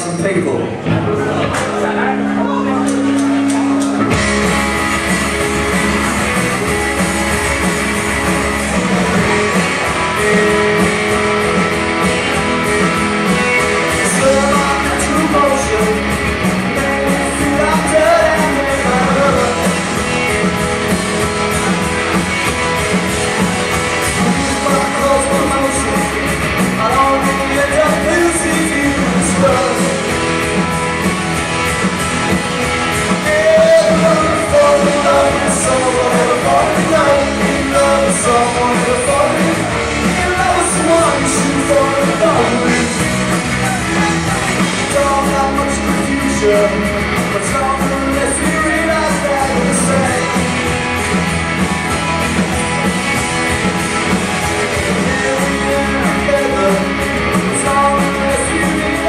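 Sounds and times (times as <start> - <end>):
rock band playing: 0.0 - 59.0
person singing: 8.7 - 21.6, 23.3 - 31.0, 32.9 - 50.8, 53.4 - 59.0.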